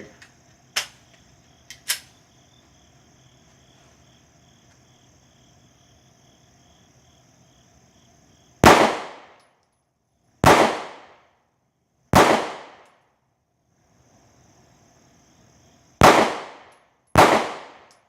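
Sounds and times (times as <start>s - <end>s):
pistol shots: 8.6s - 9.4s, 10.4s - 11.2s, 12.1s - 12.9s, 16.0s - 18.0s.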